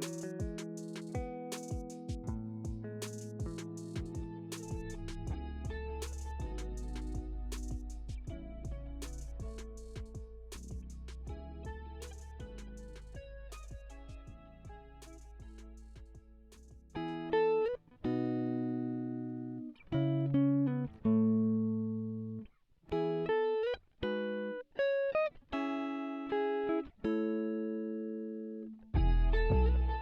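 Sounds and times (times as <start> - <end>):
plucked guitar melody: 0.0 - 30.0
bass: 2.2 - 17.2, 28.9 - 30.0.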